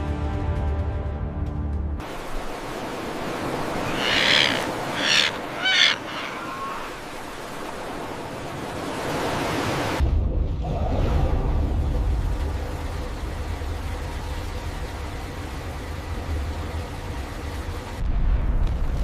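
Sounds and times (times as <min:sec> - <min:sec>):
steady rushing noise: 0:02.0 - 0:19.0
bird calls: 0:03.6 - 0:07.5.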